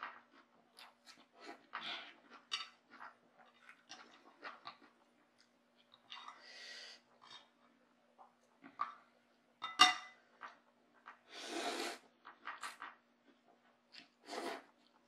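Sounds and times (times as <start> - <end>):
soft eating noises: 0.0 - 15.0.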